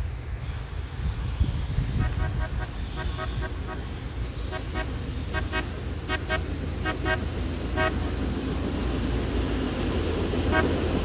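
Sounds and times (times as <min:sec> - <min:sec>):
air horns tooting: 0:04.5 - 0:08.2, 0:10.5 - 0:11.0.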